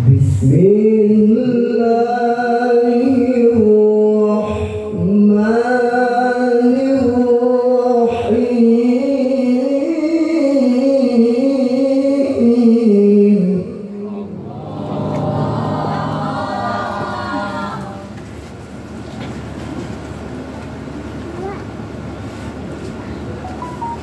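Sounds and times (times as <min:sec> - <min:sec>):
man chanting: 0:00.0 - 0:18.0.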